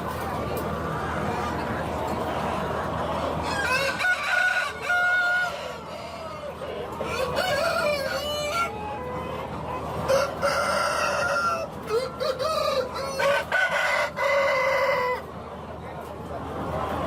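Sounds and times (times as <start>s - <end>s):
chicken calls: 0.1s - 15.4s
roosters crowing: 3.3s - 9.4s, 10.0s - 15.3s.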